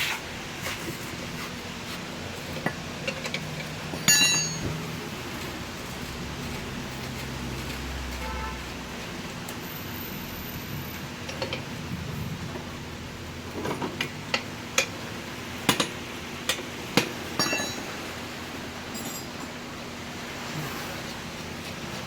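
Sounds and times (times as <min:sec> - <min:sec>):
metal tools clinking on metal: 0:02.5 - 0:04.8, 0:17.4 - 0:18.0, 0:18.9 - 0:19.6.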